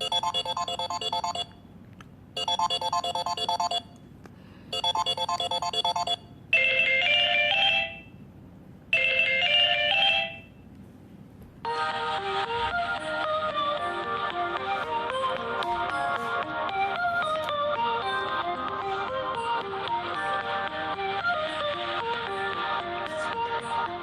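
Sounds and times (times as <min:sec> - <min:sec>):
electronic phone ringtone: 0:00.0 - 0:01.6, 0:02.4 - 0:03.9, 0:04.7 - 0:08.2, 0:08.9 - 0:10.5.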